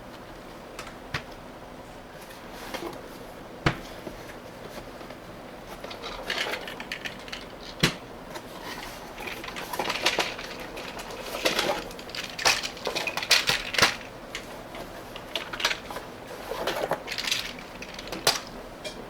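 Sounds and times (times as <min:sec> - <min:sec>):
rustling with small clatters: 0:02.2 - 0:19.0.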